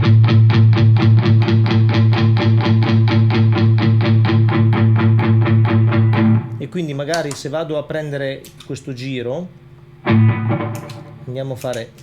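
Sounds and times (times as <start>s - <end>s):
electric guitar picked notes: 0.0s - 6.6s, 10.0s - 11.3s.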